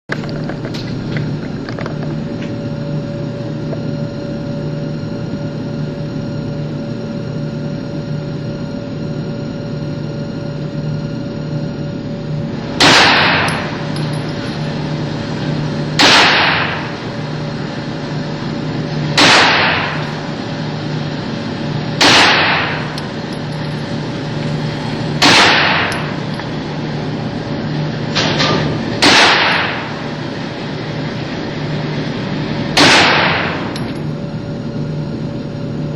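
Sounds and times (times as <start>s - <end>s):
steady low hum: 0.1s - 35.9s
gunshots with echoing tail: 12.8s - 13.6s, 16.0s - 16.9s, 19.2s - 20.0s, 22.0s - 22.9s, 25.2s - 26.0s, 29.0s - 30.0s, 32.8s - 33.7s.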